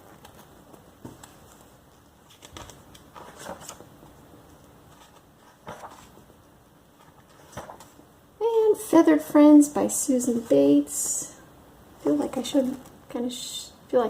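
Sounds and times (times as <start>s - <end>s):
magazine pages rustling: 0.0s - 8.1s.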